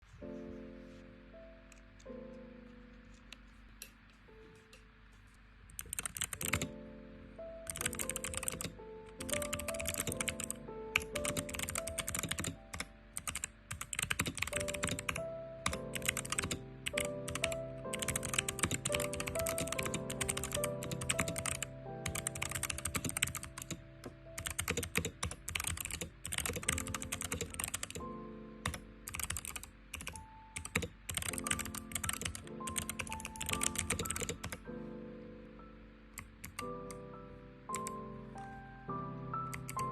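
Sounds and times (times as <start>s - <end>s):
background music: 0.0s - 39.9s
mechanical keyboard typing: 5.8s - 6.8s, 7.7s - 28.0s, 28.6s - 34.6s, 36.2s - 37.0s, 37.7s - 38.0s, 39.5s - 39.9s.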